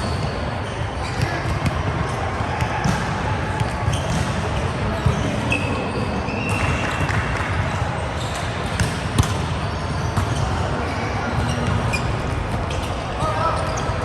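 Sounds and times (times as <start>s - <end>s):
players' voices and movement: 0.0s - 14.0s
volleyball hits: 1.2s - 5.3s, 8.4s - 10.7s.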